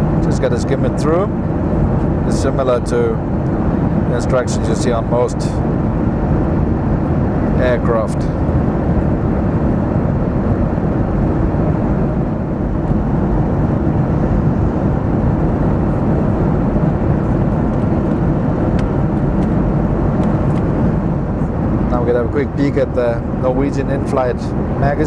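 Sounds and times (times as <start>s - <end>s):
airliner cabin engine and airflow noise: 0.0s - 25.0s.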